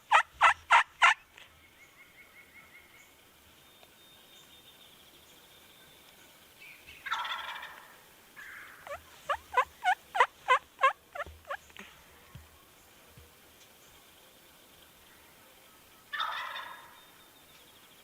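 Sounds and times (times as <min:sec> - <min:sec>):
turkey gobble: 0:00.0 - 0:01.2, 0:07.0 - 0:11.6, 0:15.7 - 0:17.2
turkey yelps: 0:00.1 - 0:01.2, 0:07.0 - 0:11.6, 0:16.1 - 0:17.0.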